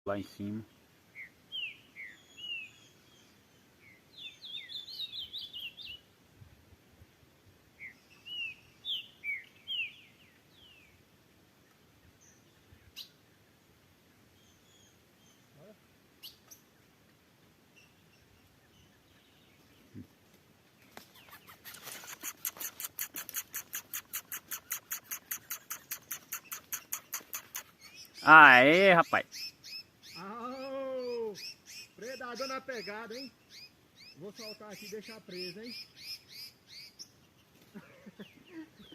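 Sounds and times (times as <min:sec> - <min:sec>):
birds chirping: 0:00.1 - 0:06.1, 0:07.8 - 0:11.0, 0:17.7 - 0:38.9
faint clicks: 0:20.3 - 0:27.8
fast sharp high ticks: 0:21.3 - 0:27.8.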